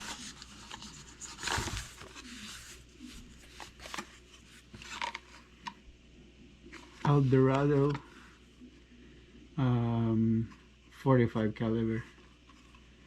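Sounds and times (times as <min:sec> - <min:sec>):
handling rustling: 0:00.0 - 0:05.8.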